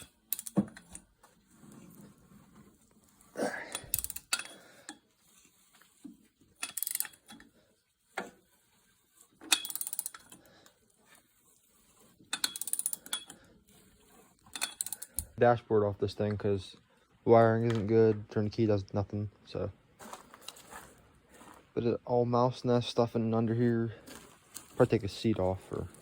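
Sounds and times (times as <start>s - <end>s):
ratchet wrench clicking: 0.0s - 1.0s, 3.7s - 4.6s, 6.6s - 7.3s, 9.5s - 10.4s, 12.3s - 13.4s, 14.5s - 15.4s.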